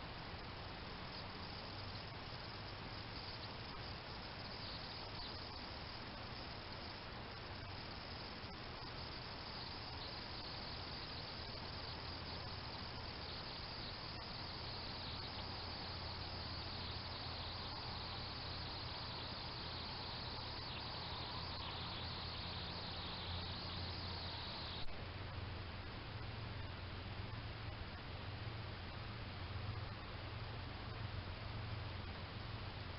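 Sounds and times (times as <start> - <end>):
crickets chirring: 0.0 - 24.9
microphone hiss: 0.0 - 32.9.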